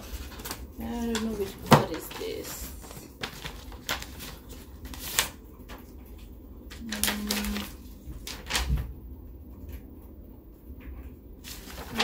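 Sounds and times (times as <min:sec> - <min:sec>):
paper rustling: 0:00.0 - 0:09.0, 0:11.4 - 0:12.0.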